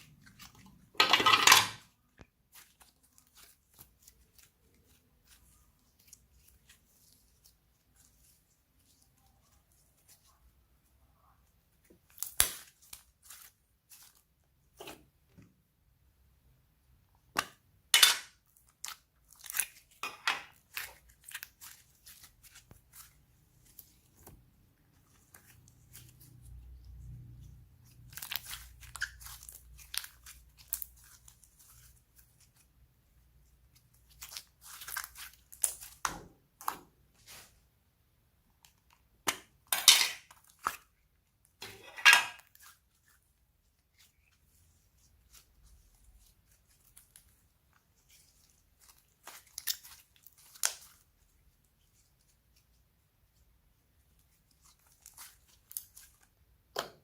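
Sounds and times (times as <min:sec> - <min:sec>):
slime crackling and popping: 0:12.0 - 0:14.1, 0:27.9 - 0:32.6, 0:33.8 - 0:36.8, 0:45.3 - 0:51.2.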